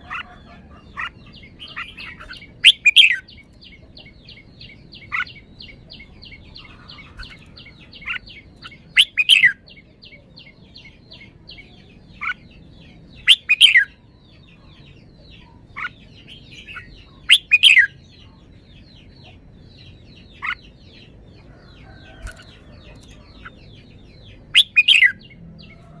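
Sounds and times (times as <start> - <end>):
rapid chirping: 0.0 - 11.4
bird singing warbled phrases: 0.0 - 26.0.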